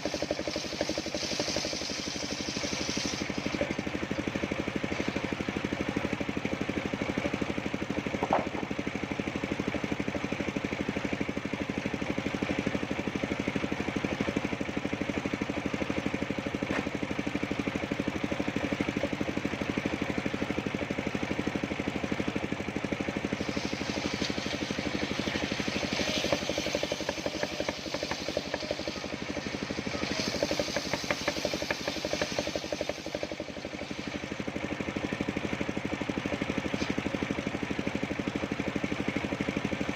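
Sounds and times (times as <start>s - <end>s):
rough hiss: 0.0s - 3.6s, 23.4s - 34.3s
sawmill engine running: 0.0s - 39.9s.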